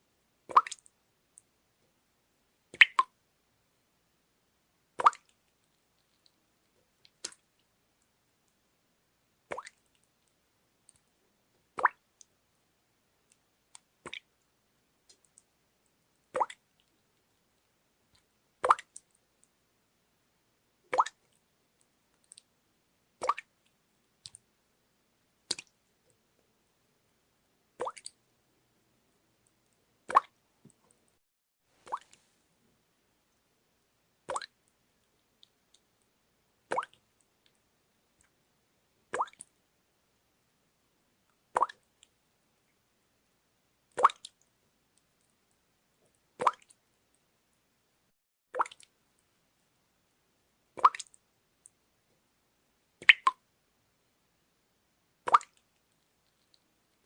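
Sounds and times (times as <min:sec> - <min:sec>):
faint water drips: 0:00.4 - 0:01.9, 0:02.7 - 0:03.2, 0:05.0 - 0:08.7, 0:09.4 - 0:12.4, 0:13.2 - 0:19.6, 0:20.8 - 0:22.6, 0:23.2 - 0:24.5, 0:25.4 - 0:26.5, 0:27.7 - 0:28.3, 0:29.1 - 0:32.4, 0:34.2 - 0:39.6, 0:41.2 - 0:42.9, 0:43.8 - 0:47.6, 0:48.5 - 0:49.7, 0:50.8 - 0:52.2, 0:53.0 - 0:53.5, 0:55.2 - 0:57.0.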